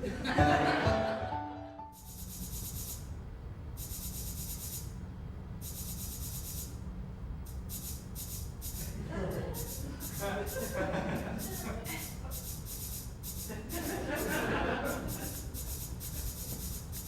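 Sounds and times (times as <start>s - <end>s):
scratchy rubbing strokes: 2.0s - 3.1s, 11.4s - 17.0s.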